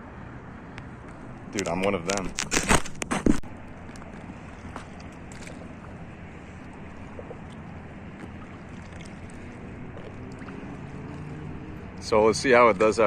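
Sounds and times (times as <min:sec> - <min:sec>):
water lapping: 0:03.5 - 0:13.0.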